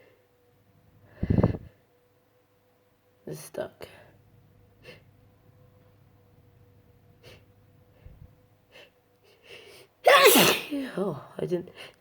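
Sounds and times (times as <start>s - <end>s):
person sniffing and breathing: 1.1s - 1.8s.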